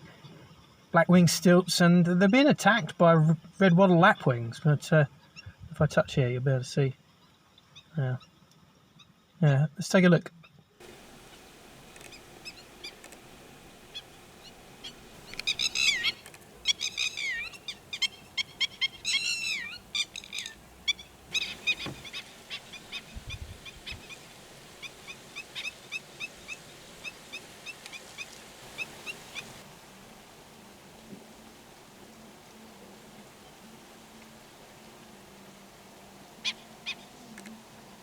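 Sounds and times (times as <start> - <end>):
shrill bird alarm calls: 10.8 - 29.6.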